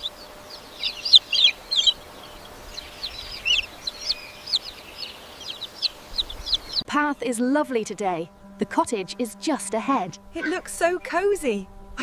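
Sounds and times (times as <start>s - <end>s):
baby chick peeping: 0.0s - 6.9s, 10.2s - 10.6s.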